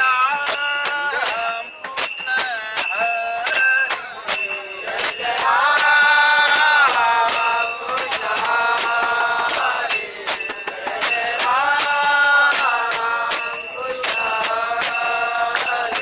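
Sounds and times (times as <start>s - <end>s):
jingling metal percussion: 0.0s - 16.0s
people singing a chant: 0.0s - 16.0s.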